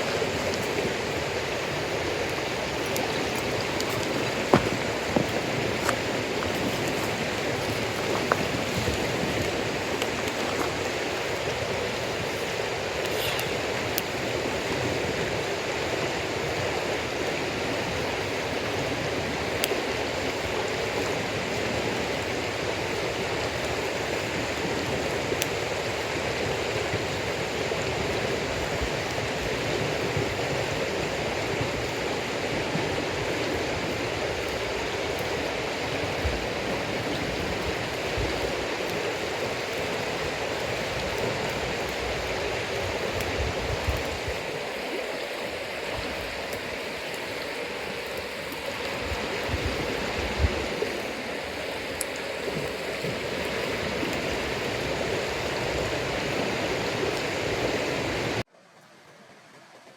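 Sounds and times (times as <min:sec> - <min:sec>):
campfire crackling and popping: 0:00.0 - 0:58.4
fire rushing hiss: 0:00.0 - 0:58.5.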